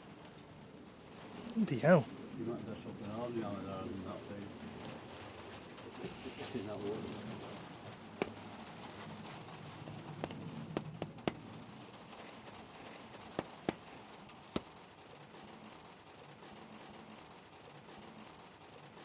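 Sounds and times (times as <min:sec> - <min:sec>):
hand tools clicking on metal: 0:10.2 - 0:11.5, 0:12.8 - 0:14.7.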